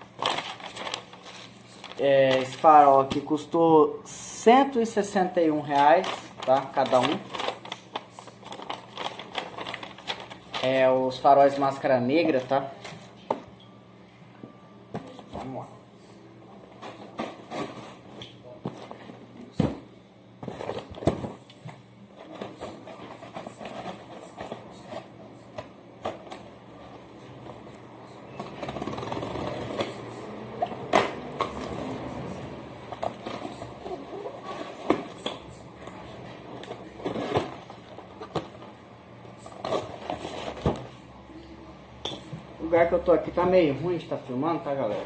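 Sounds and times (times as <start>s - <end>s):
cardboard rustling and scraping: 22.2s - 25.2s, 39.5s - 41.0s.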